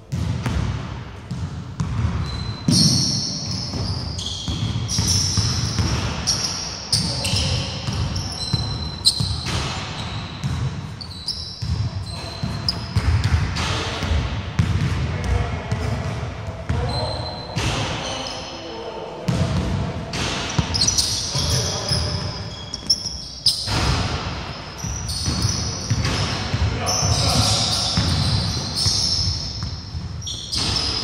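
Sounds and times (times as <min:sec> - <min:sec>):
basketball bouncing: 0:00.1 - 0:06.3, 0:07.2 - 0:10.8, 0:11.6 - 0:15.4, 0:27.3 - 0:31.0
sneaker squeaks on wood floor: 0:01.8 - 0:13.3, 0:16.7 - 0:18.7, 0:20.2 - 0:31.0.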